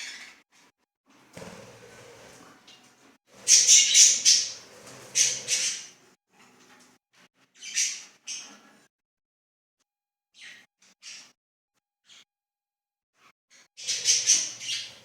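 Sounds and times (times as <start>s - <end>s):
birds chirping softly: 3.4s - 6.0s, 13.5s - 15.0s
birds squawking: 3.4s - 6.0s, 13.8s - 15.0s.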